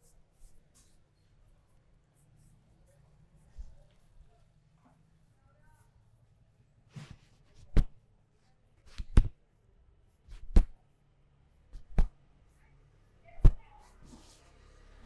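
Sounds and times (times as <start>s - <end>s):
hand slaps on skin: 7.6s - 8.0s, 8.9s - 9.4s, 10.3s - 10.8s, 11.8s - 12.2s, 13.4s - 13.6s
light hand taps: 8.9s - 9.4s, 11.8s - 12.2s, 13.4s - 13.6s.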